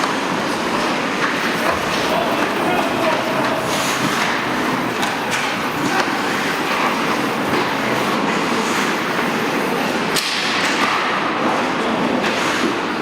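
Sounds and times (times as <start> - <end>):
ice hockey play din: 1.2 - 8.8.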